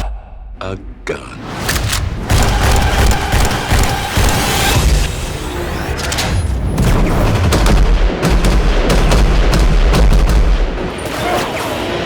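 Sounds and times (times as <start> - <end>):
rapid gunshots: 2.2 - 5.2, 6.7 - 11.7.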